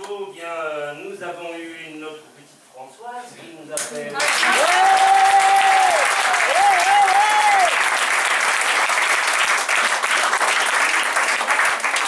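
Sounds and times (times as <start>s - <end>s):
audience applauding: 4.2s - 12.0s.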